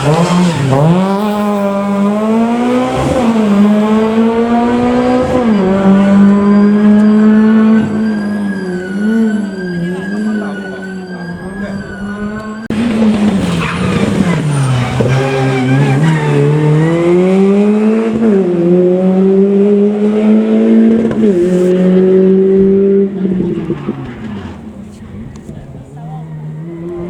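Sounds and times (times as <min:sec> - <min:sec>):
rally car engine at full throttle: 0:00.0 - 0:27.0.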